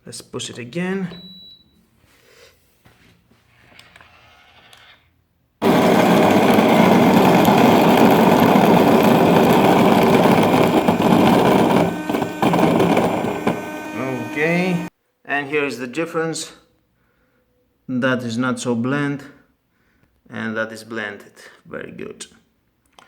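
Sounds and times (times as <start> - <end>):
coffee grinder grinding beans: 5.6 - 14.9.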